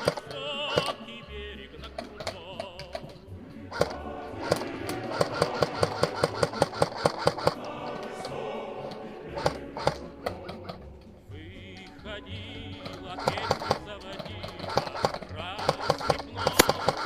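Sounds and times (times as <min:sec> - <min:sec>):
airsoft guns firing: 0:14.7 - 0:17.0.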